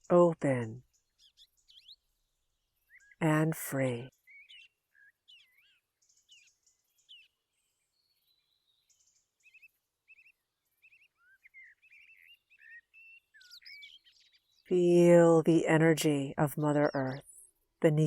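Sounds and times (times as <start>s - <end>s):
faint bird calls: 8.1s - 14.5s.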